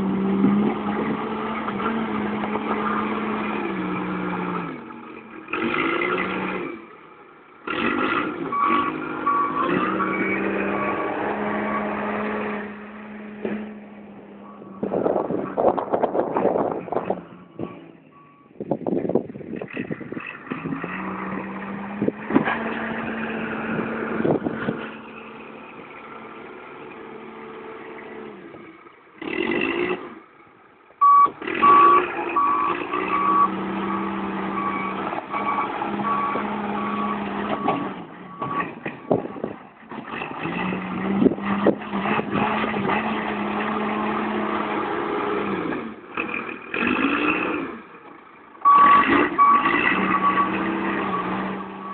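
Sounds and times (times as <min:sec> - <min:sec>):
heavy truck engine: 0:00.0 - 0:51.9
reversing alarm beeping: 0:08.5 - 0:12.1, 0:31.0 - 0:38.7, 0:48.7 - 0:51.9.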